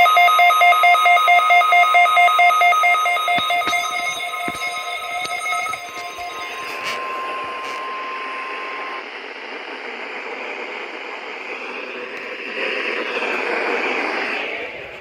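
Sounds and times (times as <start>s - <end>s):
steady single-pitch tone: 0.0s - 14.4s
radio static hiss: 3.1s - 15.0s.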